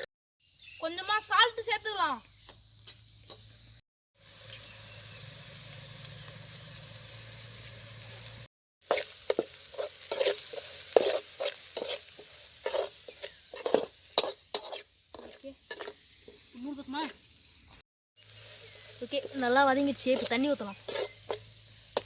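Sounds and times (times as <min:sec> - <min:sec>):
crickets chirring: 0:00.4 - 0:22.0
vegetables frying: 0:04.2 - 0:17.6, 0:18.2 - 0:22.0.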